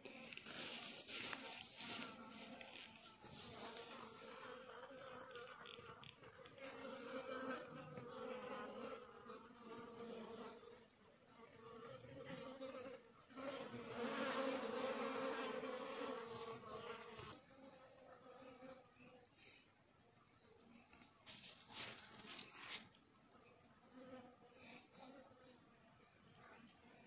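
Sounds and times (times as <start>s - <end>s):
flying insects buzzing: 0.0s - 19.8s
high-pitched insect drone: 0.0s - 19.8s.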